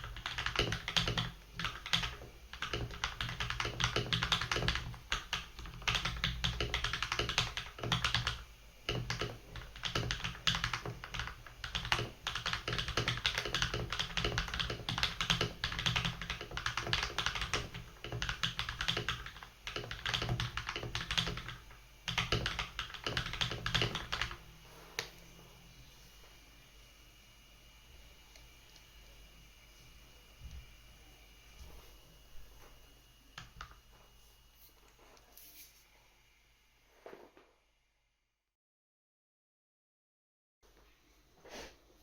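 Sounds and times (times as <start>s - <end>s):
fast typing on mechanical keyboard: 0.0s - 24.4s.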